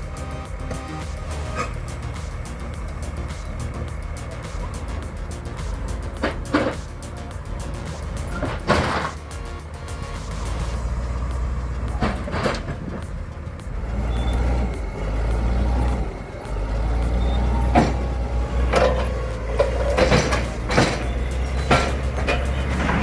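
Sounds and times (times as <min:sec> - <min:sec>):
diesel engine droning: 0:00.0 - 0:23.0
metallic clanks: 0:10.4 - 0:23.0.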